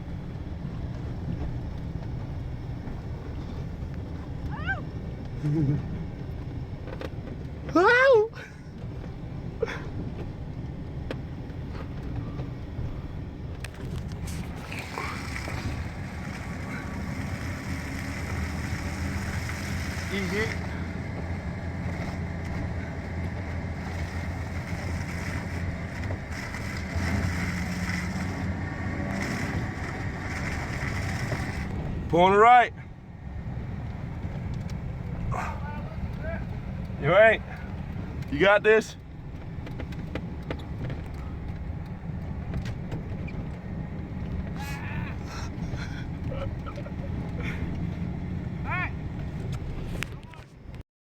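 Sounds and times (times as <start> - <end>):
pickup engine drone: 0.0 - 50.8
road noise: 0.0 - 50.8.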